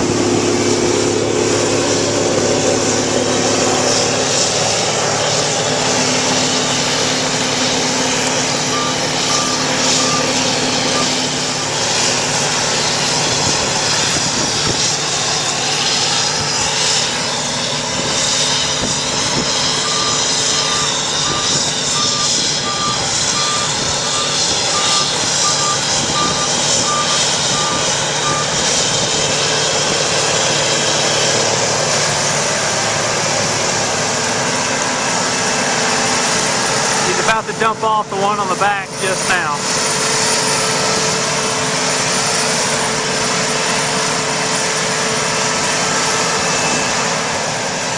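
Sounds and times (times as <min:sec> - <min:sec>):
warning beeper beeping: 0:08.6 - 0:11.7, 0:19.8 - 0:28.6, 0:37.0 - 0:39.6.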